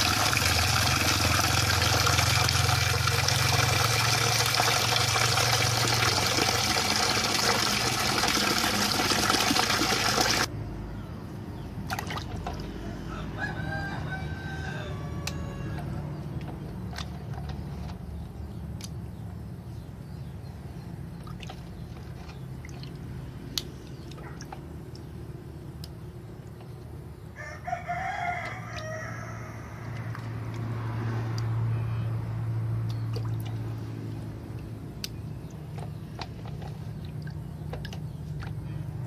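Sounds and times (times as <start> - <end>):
rooster crowing: 12.8 - 16.2, 27.4 - 30.4.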